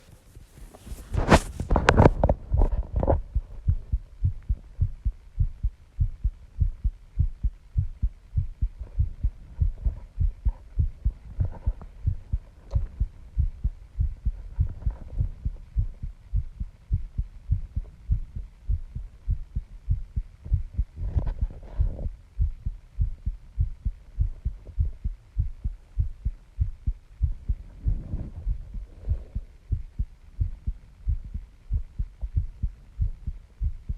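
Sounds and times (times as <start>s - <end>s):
rustling: 0.0s - 3.7s
heart pounding: 1.1s - 33.9s.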